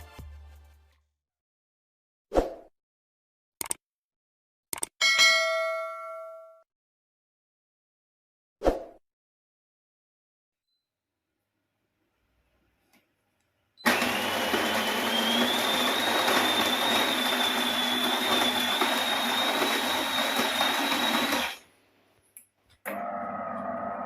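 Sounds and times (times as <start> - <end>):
coffee grinder grinding beans: 13.8 - 21.7, 22.9 - 24.0.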